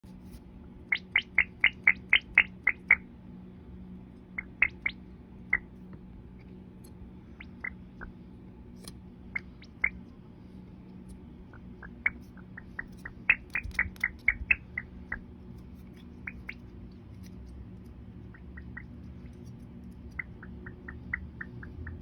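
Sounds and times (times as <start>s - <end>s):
faint steady hum: 0.0s - 22.0s
high bird-like chirps: 0.9s - 3.0s, 4.4s - 5.7s, 9.4s - 10.0s, 11.8s - 14.9s.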